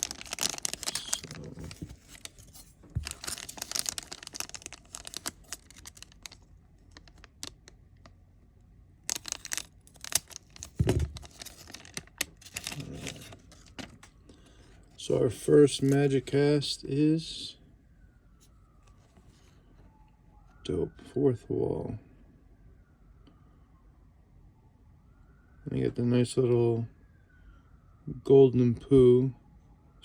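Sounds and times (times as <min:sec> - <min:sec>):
foil wrapper crinkling and tearing: 0:00.0 - 0:07.8, 0:09.1 - 0:14.1.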